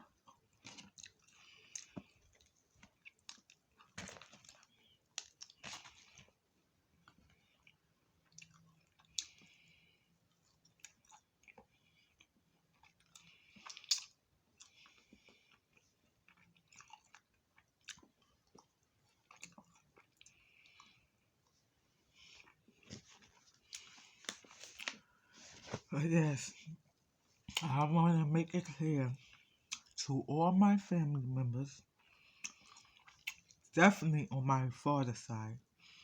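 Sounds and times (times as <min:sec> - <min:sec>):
person chewing fried food: 0:00.0 - 0:25.8, 0:29.2 - 0:30.0, 0:31.8 - 0:33.7.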